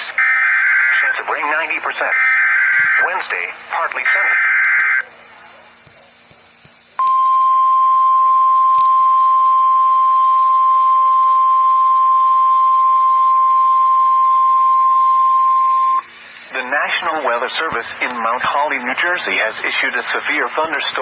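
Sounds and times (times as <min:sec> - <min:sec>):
loud high alarm tone: 0:00.0 - 0:01.1, 0:02.0 - 0:03.2, 0:07.0 - 0:16.2.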